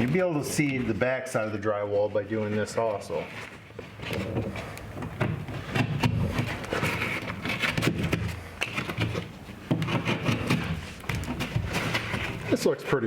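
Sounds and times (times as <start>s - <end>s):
drywall pieces knocking: 4.1s - 12.5s
knife scraping through drywall: 5.5s - 12.7s.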